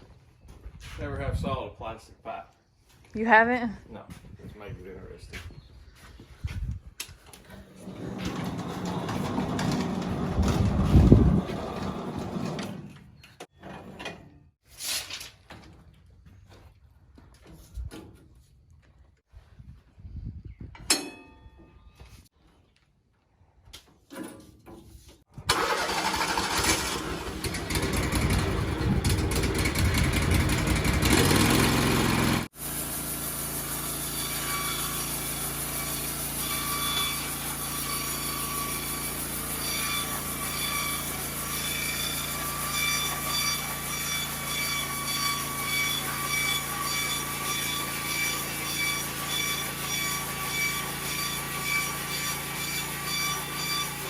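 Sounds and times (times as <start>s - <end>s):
sawmill engine running: 7.5s - 13.1s, 25.5s - 54.0s.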